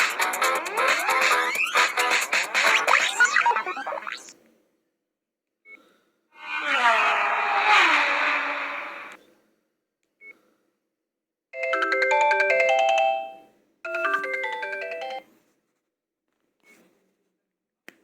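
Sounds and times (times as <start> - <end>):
synthesized phone ringtone: 11.6 - 15.3.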